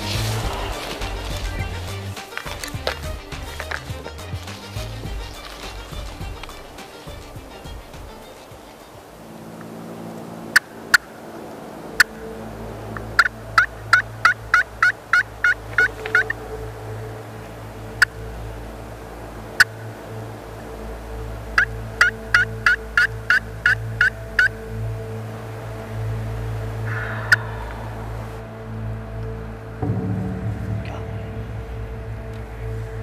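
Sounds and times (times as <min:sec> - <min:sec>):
turkey call clucks: 0:10.4 - 0:12.3, 0:12.9 - 0:16.8, 0:19.5 - 0:20.1, 0:21.5 - 0:24.7, 0:26.8 - 0:28.4
turkey call yelps: 0:13.0 - 0:16.5, 0:21.6 - 0:24.6, 0:26.8 - 0:28.4.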